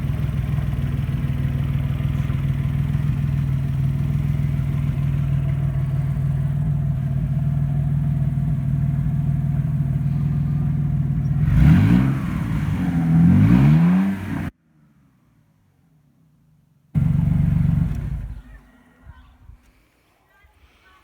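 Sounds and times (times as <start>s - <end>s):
car engine idling and revving: 0.0s - 14.6s, 17.0s - 18.6s.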